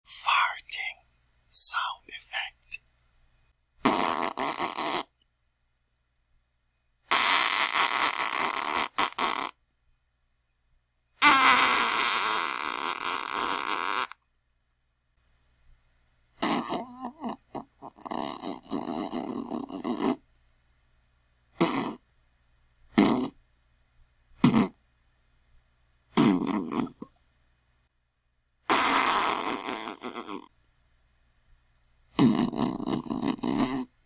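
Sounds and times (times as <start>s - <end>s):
fart sounds: 3.8s - 5.2s, 7.1s - 9.6s, 11.2s - 14.2s, 16.4s - 20.2s, 21.5s - 22.1s, 22.9s - 23.4s, 24.4s - 24.8s, 26.1s - 27.1s, 28.7s - 30.5s, 32.1s - 34.0s.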